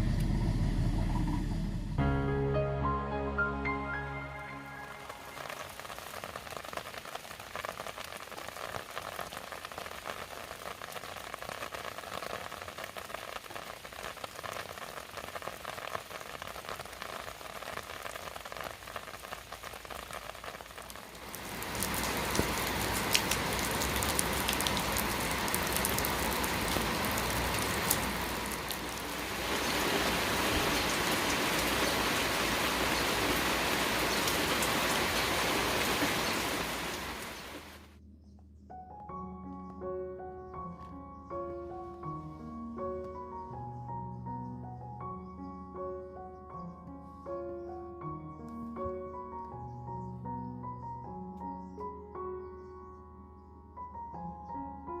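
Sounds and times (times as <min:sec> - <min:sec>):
rain falling: 0:00.0 - 0:37.9.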